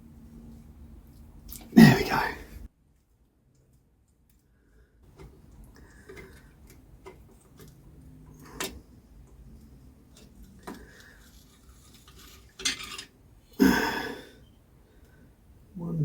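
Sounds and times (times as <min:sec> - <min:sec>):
metal engine parts clinking: 0:10.1 - 0:13.2
metal scrape: 0:10.3 - 0:13.1.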